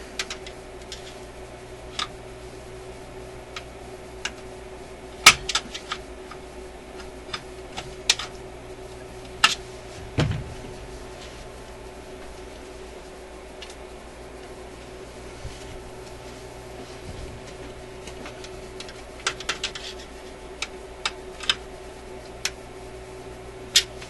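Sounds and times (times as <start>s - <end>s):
faint steady hum: 0.0s - 24.0s
dull knock: 10.1s - 10.8s.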